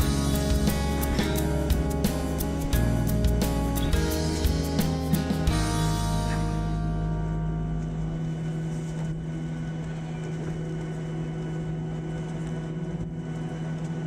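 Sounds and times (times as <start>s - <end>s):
background music: 0.0s - 8.6s
jet airliner hum: 0.0s - 14.0s.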